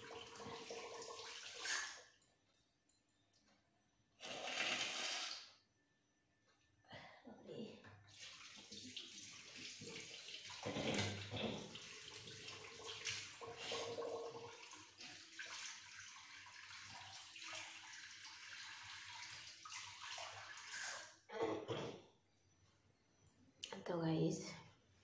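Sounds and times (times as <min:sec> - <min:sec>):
tap water running into basin: 0:00.0 - 0:02.1, 0:04.2 - 0:05.5, 0:08.0 - 0:21.2.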